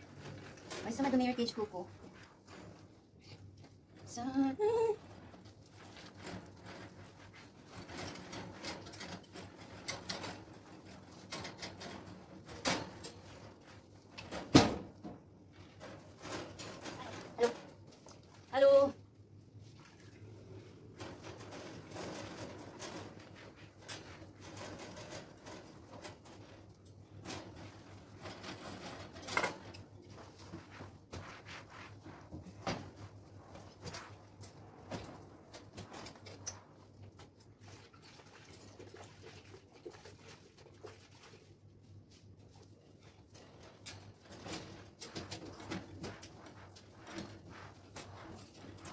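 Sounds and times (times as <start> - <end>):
birdcage handling clatter: 5.1 - 18.2, 20.8 - 31.6
bird cage knocks and scrapes: 14.2 - 17.8.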